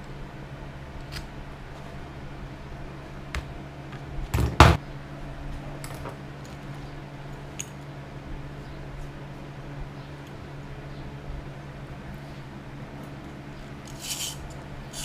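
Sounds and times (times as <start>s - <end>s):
steady low hum: 0.0s - 15.0s
metal tools clicking: 13.8s - 15.0s.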